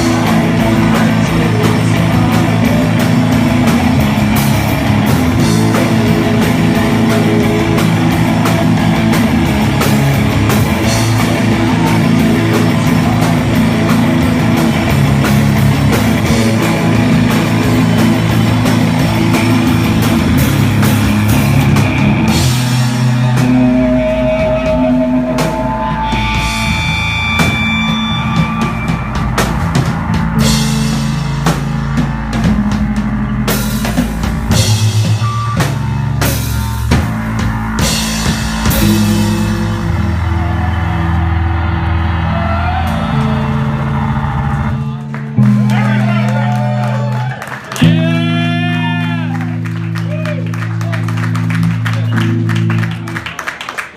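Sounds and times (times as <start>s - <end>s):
drum kit with cymbals: 0.0s - 41.0s
guitar feedback tones: 0.0s - 53.3s
distorted electric guitars: 0.0s - 53.5s
bass guitar: 0.0s - 53.9s
low drone: 15.5s - 35.6s.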